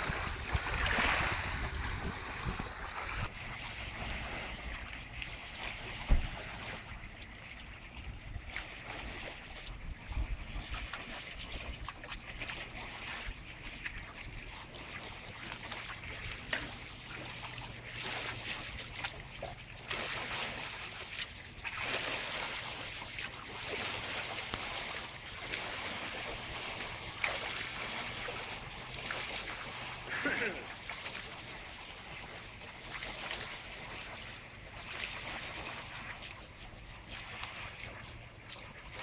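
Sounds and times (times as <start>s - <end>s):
wind on microphone: 0.0s - 4.7s
small waves splashing: 0.0s - 39.0s.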